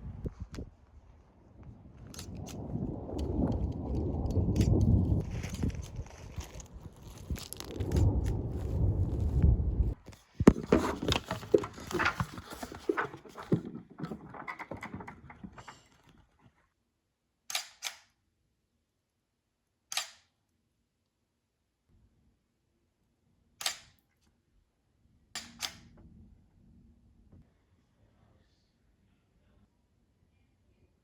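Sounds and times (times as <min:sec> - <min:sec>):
sharp clicks and knocks: 0:10.1 - 0:16.2.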